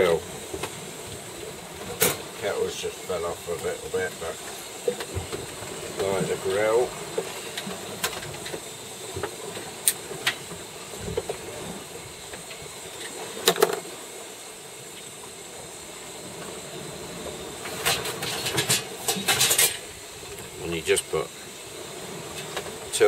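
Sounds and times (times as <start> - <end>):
steady gas hiss: 0.0 - 23.0
clack and clatter: 17.7 - 19.8.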